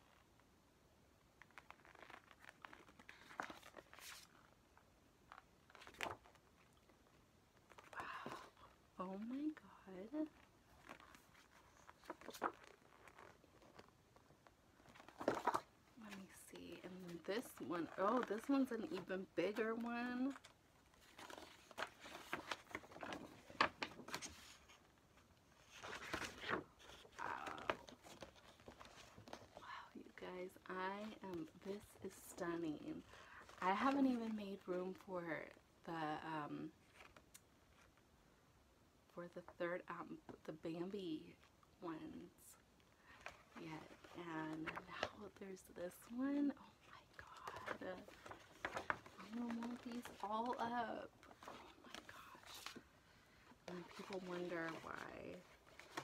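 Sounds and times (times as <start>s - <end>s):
paper crinkling and rustling: 1.4s - 4.5s, 5.3s - 6.8s, 10.2s - 29.6s, 47.1s - 56.0s.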